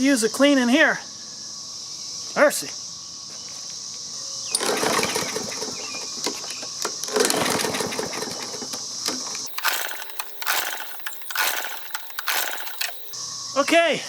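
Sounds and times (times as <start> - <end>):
mower engine being pull-started: 9.5 - 13.2.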